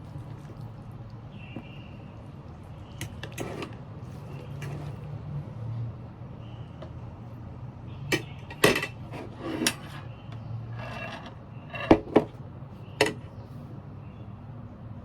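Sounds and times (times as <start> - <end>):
cutlery scraping: 3.0 - 5.1, 8.1 - 10.1, 10.7 - 12.4, 13.0 - 13.2
cutlery and dishes clicking: 8.1 - 10.0.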